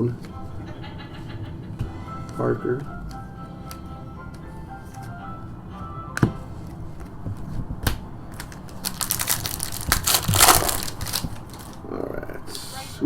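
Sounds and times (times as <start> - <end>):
faint background music: 0.0 - 13.0
foil wrapper crinkling and tearing: 8.3 - 11.9.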